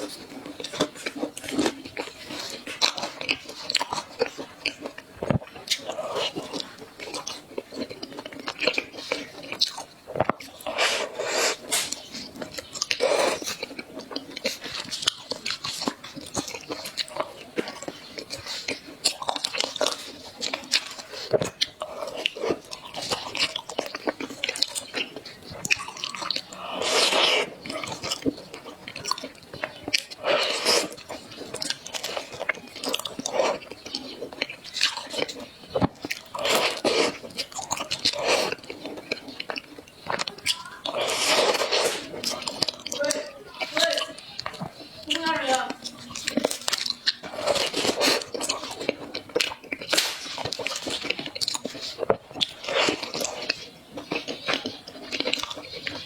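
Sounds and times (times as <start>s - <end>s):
person chewing crunchy food: 0.0s - 56.0s.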